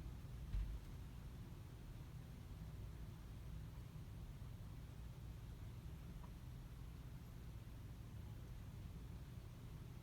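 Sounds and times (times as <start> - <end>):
ceiling fan rumbling: 0.0 - 10.0.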